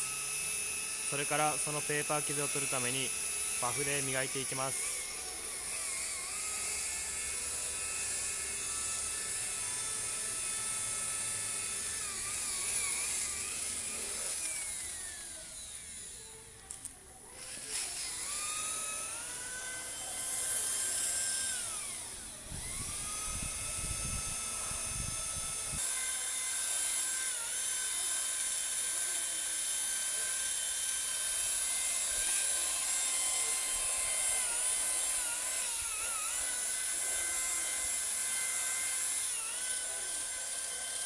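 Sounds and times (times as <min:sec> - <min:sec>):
electric polisher motor whining: 0:00.0 - 0:41.0.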